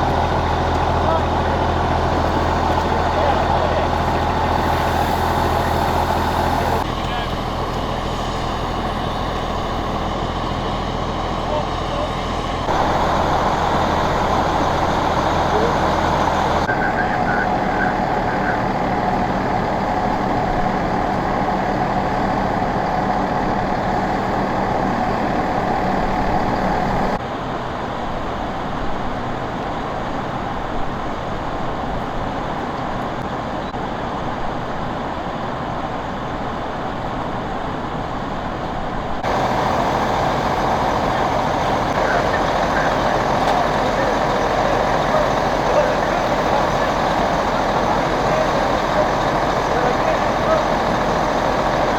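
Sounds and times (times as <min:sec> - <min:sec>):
steady whine: 0:00.0 - 0:27.2, 0:39.2 - 0:51.9
fire engines droning: 0:00.0 - 0:51.9.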